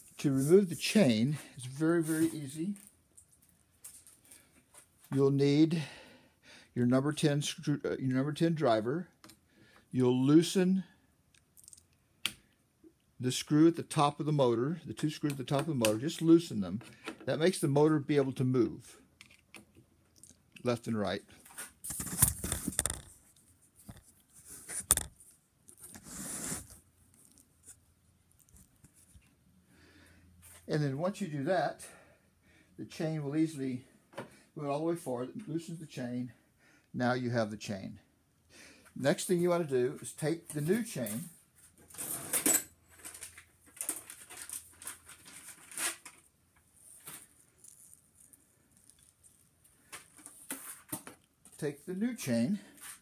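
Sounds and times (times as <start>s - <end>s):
metal chain clicking and rustling: 41.8s - 44.4s.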